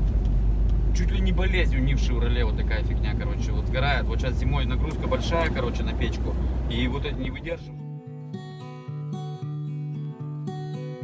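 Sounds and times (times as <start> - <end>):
acoustic guitar plucked chords: 7.3 - 11.0.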